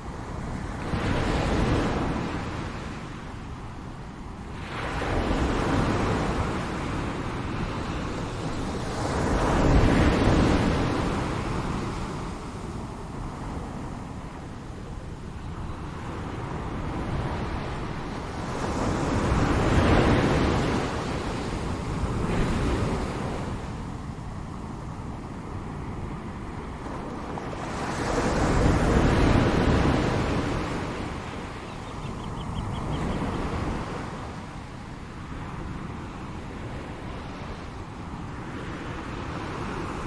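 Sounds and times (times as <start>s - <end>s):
ocean waves breaking: 16.1s - 40.0s.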